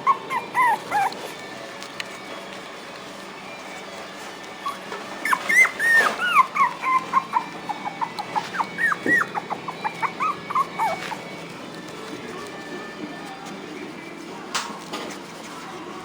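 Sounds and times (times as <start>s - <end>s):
puppy whining and yipping: 0.0s - 2.2s, 4.5s - 12.4s.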